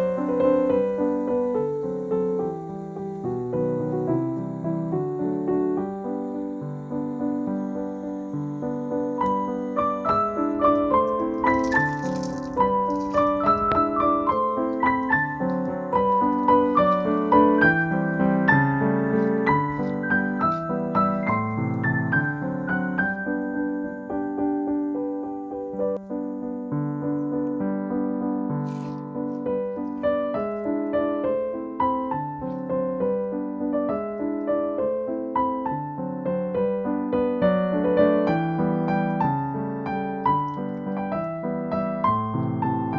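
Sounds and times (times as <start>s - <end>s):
gentle piano music: 0.0s - 42.9s.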